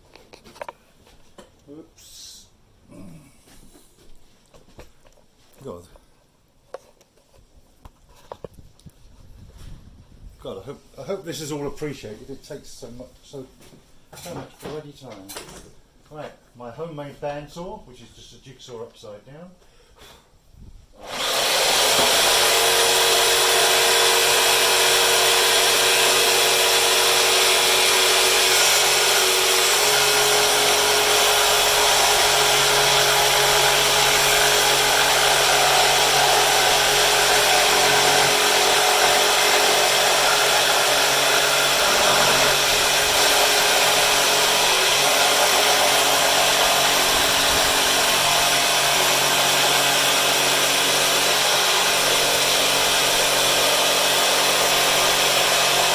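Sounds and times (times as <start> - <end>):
jigsaw cutting wood: 21.0 - 55.9.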